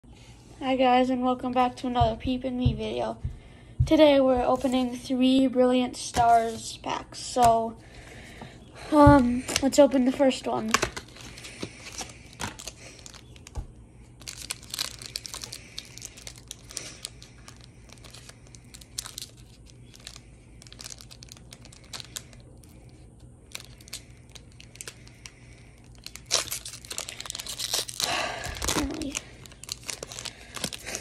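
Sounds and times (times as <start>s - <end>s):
foil wrapper tearing and crinkling: 10.3s - 13.6s, 14.2s - 31.0s.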